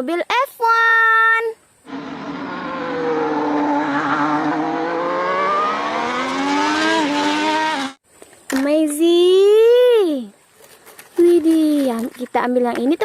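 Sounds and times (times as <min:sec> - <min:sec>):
race car engine accelerating: 0:01.9 - 0:08.0.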